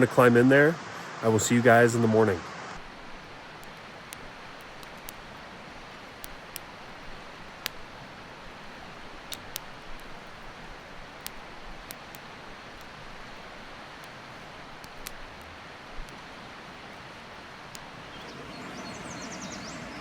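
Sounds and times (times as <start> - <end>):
mountain river rushing: 0.0 - 2.8, 15.6 - 20.0.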